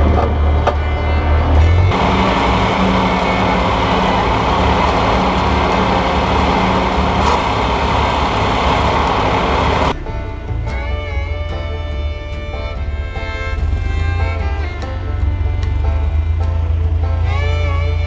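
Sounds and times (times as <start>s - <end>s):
music: 0.0s - 18.0s
tractor engine running: 0.0s - 18.0s.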